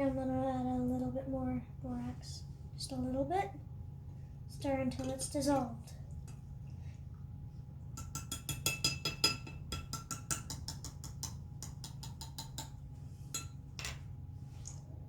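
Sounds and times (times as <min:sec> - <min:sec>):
spoon clinking against bowl: 0:08.0 - 0:12.8, 0:13.4 - 0:14.0.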